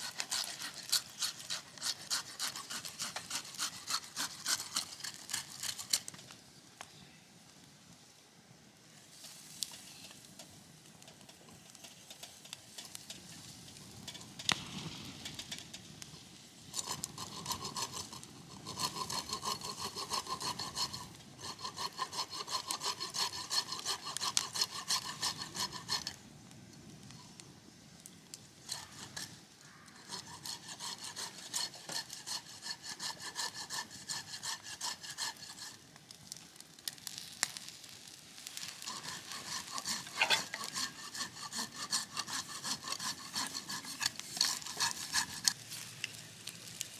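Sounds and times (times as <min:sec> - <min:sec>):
hand saw cutting wood: 0:00.0 - 0:06.1, 0:16.8 - 0:26.2, 0:28.7 - 0:29.3, 0:30.0 - 0:35.8, 0:38.6 - 0:45.6.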